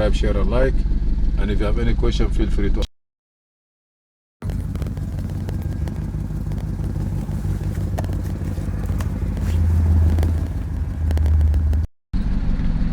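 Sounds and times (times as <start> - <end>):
car engine idling: 4.4 - 11.9.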